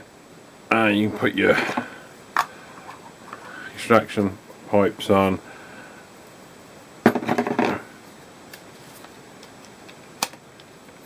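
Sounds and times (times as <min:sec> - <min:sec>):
plastic parts clattering: 0:01.5 - 0:03.5.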